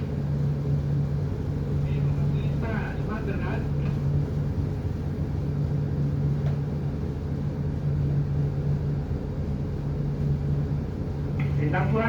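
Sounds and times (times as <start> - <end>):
ship engine droning: 0.0 - 12.0.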